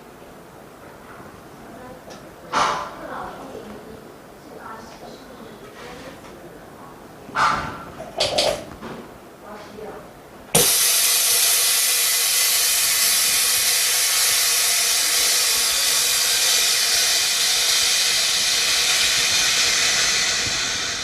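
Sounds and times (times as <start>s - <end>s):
compressed air hissing: 10.6s - 21.0s.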